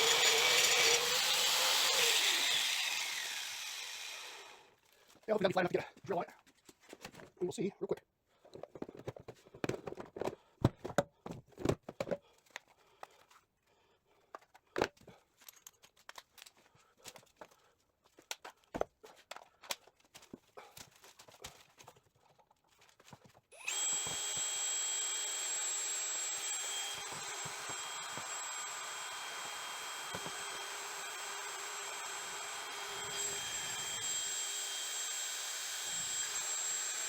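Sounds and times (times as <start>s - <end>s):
electric drill whining: 0.0s - 4.7s, 23.6s - 37.0s.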